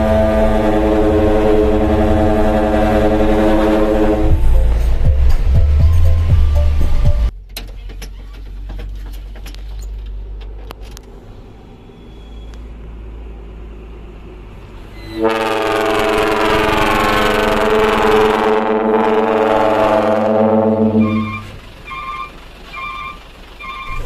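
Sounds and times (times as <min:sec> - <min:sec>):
trumpet air horn blast: 0:00.0 - 0:04.7, 0:15.1 - 0:21.6
truck engine idling: 0:00.0 - 0:10.3, 0:16.0 - 0:24.0.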